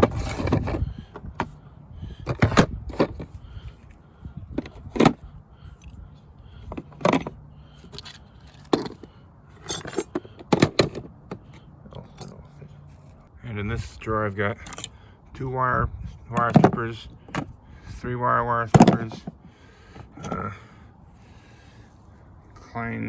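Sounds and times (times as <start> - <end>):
tools rattling: 0.0 - 13.1, 14.6 - 15.0, 16.3 - 17.6, 18.6 - 20.6
plastic and metal clicks and knocks: 2.2 - 3.3, 7.9 - 9.1, 9.8 - 11.6, 16.4 - 17.5, 18.7 - 19.4.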